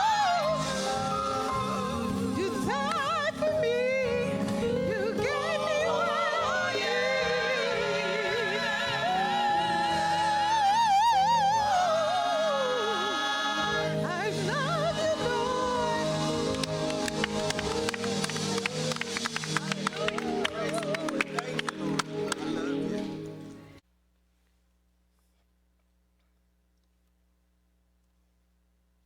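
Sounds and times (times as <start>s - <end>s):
person singing with vibrato: 0.0s - 17.5s
held accompaniment: 0.0s - 23.8s.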